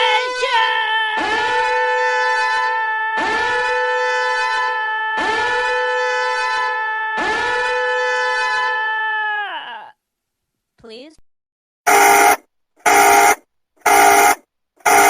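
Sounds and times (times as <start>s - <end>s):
buzzy horn alarm blasts: 0.0s - 8.9s, 11.9s - 15.0s.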